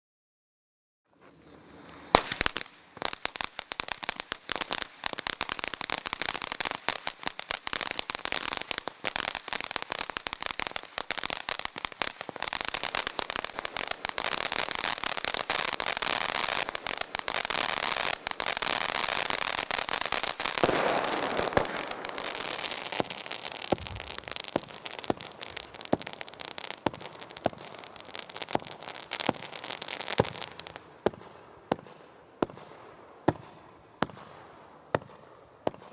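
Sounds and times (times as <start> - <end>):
fireworks shots and crackling bursts: 1.2 - 35.9
sharp firework bangs: 2.0 - 2.7, 20.3 - 26.2.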